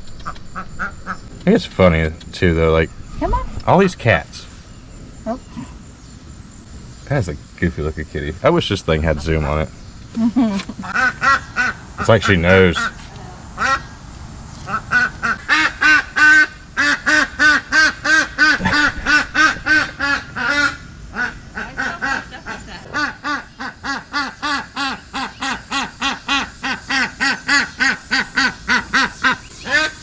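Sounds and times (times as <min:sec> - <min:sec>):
duck quacking: 0:10.8 - 0:13.0, 0:13.6 - 0:13.9, 0:14.7 - 0:30.0.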